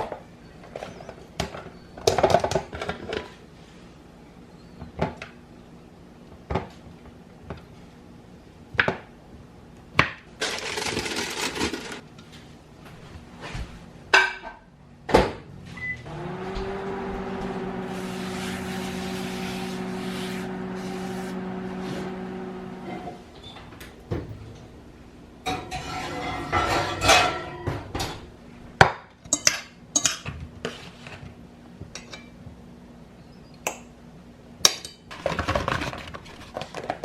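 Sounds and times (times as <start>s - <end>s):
electric appliance humming: 15.4s - 25.3s.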